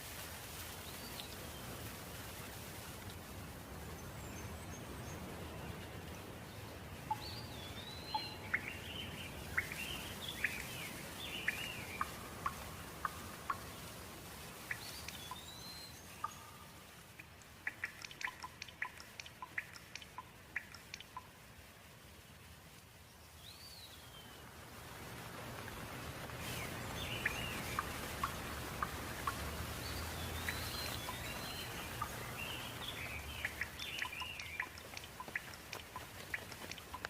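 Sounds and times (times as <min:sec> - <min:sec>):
sharp water drips: 0:00.0 - 0:21.9, 0:25.1 - 0:37.0
light rain hissing: 0:00.0 - 0:37.0
birds chirping: 0:03.8 - 0:21.3, 0:26.1 - 0:37.0.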